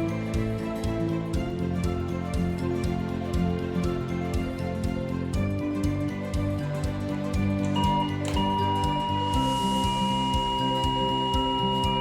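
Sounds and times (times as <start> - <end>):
music with sustained notes and beat: 0.0 - 12.0
steady high tone: 7.6 - 12.0.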